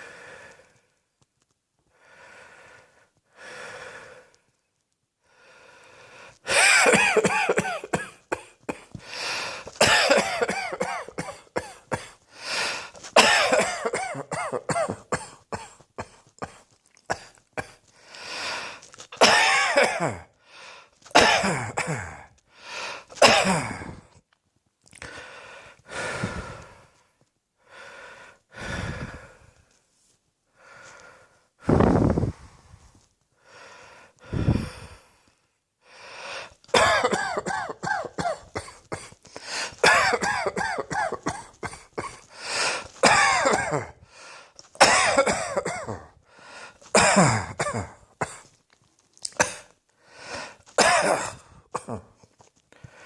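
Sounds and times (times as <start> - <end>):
person coughing: 6.5 - 9.0, 9.8 - 12.2, 13.1 - 17.8, 19.2 - 20.3, 21.1 - 22.3, 23.2 - 24.1, 36.7 - 44.0, 44.8 - 46.2, 46.9 - 48.5, 49.3 - 49.7, 50.8 - 52.2.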